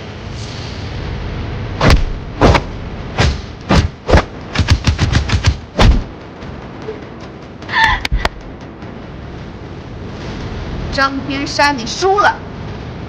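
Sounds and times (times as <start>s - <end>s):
punch hit sound effects: 1.8s - 6.1s.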